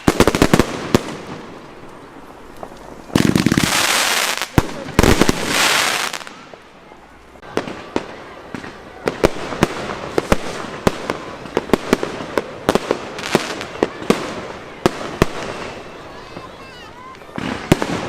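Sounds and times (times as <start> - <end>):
firework bangs and cracks: 0.0 - 6.7, 7.3 - 18.0
firework hissing rush: 3.1 - 6.6.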